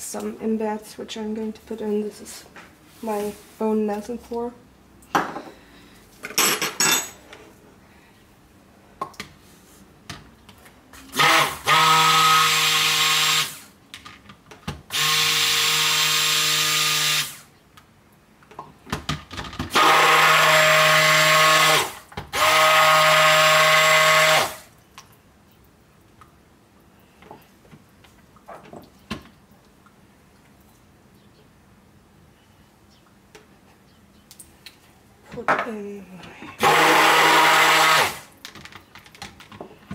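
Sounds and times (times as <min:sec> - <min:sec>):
stick blender motor hum: 0:36.6 - 0:38.2.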